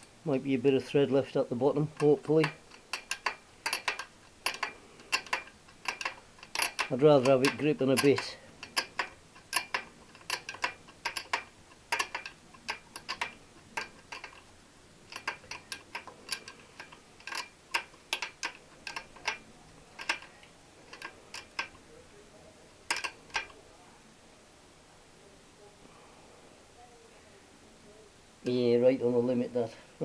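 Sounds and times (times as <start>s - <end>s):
ratchet spanner clicking: 1.9s - 14.4s, 15.1s - 20.3s, 20.9s - 21.8s, 22.9s - 23.6s.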